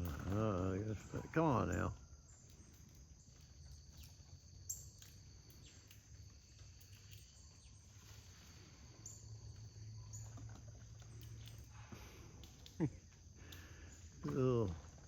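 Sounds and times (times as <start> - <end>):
insect drone: 0.0 - 15.0
faint clicks: 9.5 - 14.8.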